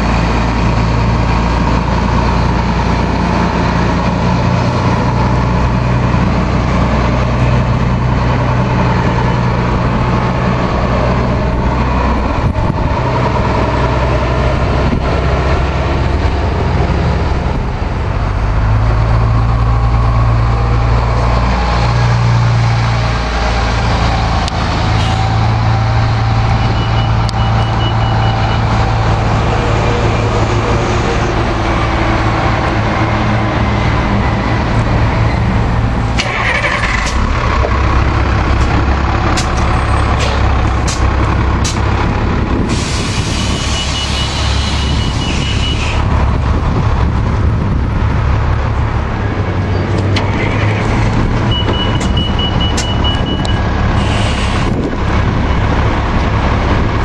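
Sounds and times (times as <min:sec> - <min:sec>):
bus diesel engine running: 0:00.0 - 0:57.0
air brakes hissing: 0:42.6 - 0:46.0, 0:53.9 - 0:54.8.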